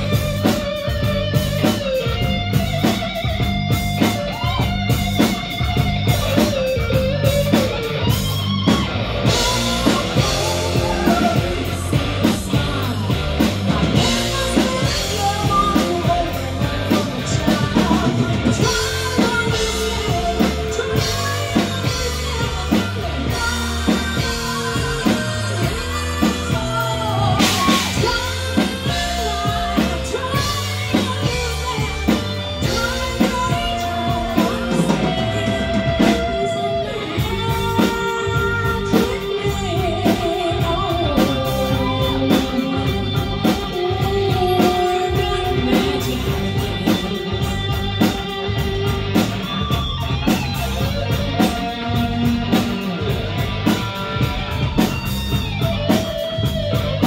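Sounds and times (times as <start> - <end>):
bass guitar: 0.0 - 57.0
drum kit: 0.0 - 57.0
electric guitar: 0.0 - 57.0
person singing: 0.0 - 57.0.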